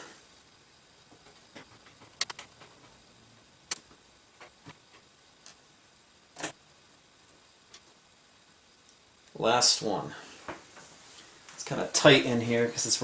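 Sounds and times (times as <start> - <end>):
rattle: 0.8 - 3.1.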